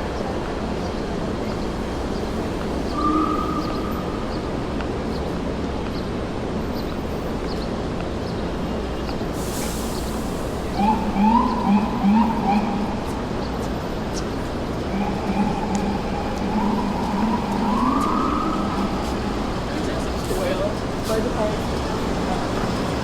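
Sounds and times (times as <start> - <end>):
traffic noise: 0.0 - 23.0
emergency vehicle siren: 2.8 - 4.3, 10.5 - 13.5, 14.4 - 20.7
burst of hiss: 9.4 - 10.6
steady tone: 14.8 - 20.0.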